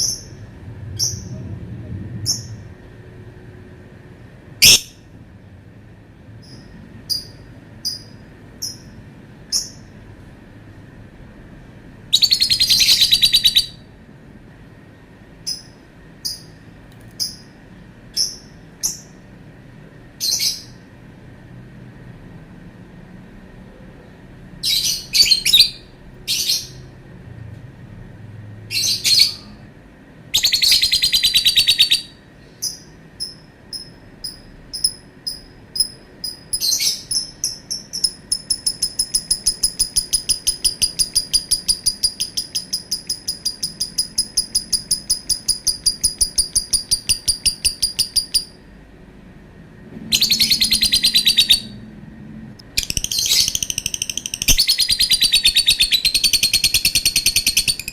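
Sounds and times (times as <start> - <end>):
bird trilling and chirping: 4.6 - 5.0, 12.1 - 13.8, 30.4 - 33.4, 34.3 - 48.6, 50.1 - 51.8, 52.7 - 57.9.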